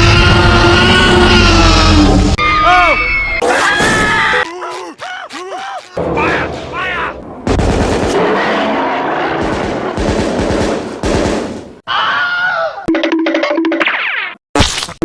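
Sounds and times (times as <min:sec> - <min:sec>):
rapid rifle gunfire: 0:09.3 - 0:11.7.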